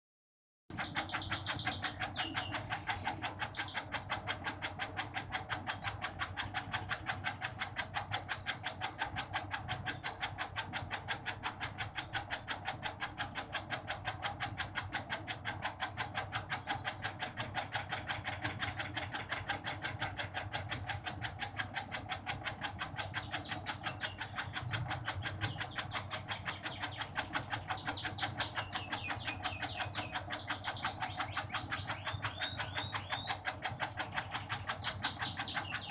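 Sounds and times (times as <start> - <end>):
shredding machine chopping: 0.7 - 35.9.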